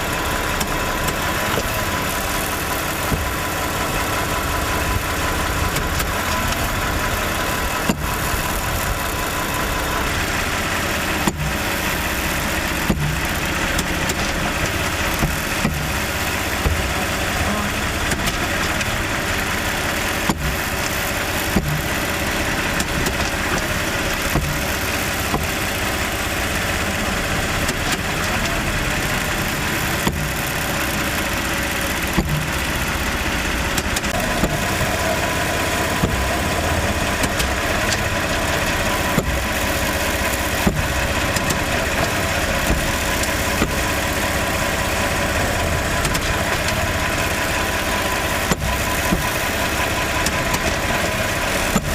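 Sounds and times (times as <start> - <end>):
car engine running: 0.0 - 51.9.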